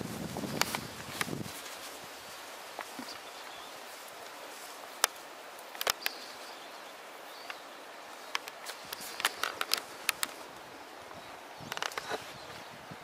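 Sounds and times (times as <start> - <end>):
outdoor background hiss: 0.0 - 13.0
sharp clicks and ticks: 8.3 - 10.4.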